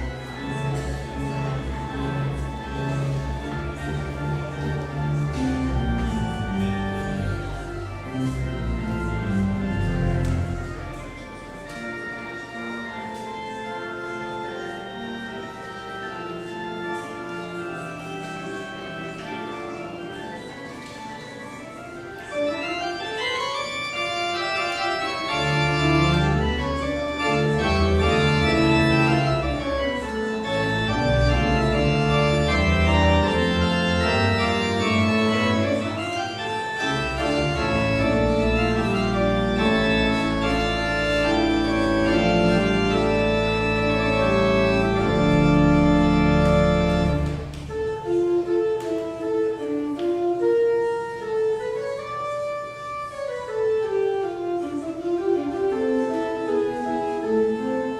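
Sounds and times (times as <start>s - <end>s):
deep organ pedal bass: 0.0s - 11.0s, 24.6s - 48.5s
organ music: 0.0s - 57.9s.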